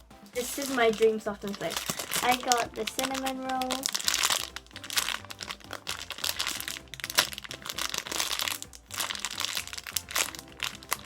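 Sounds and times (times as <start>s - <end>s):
plastic packaging crinkling: 0.3s - 11.0s.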